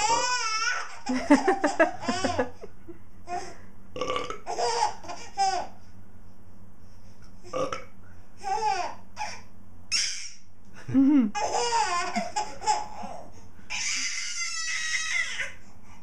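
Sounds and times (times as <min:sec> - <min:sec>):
boy laughing: 0:01.0 - 0:03.0, 0:10.8 - 0:12.9
burp: 0:04.0 - 0:04.5, 0:07.5 - 0:07.9.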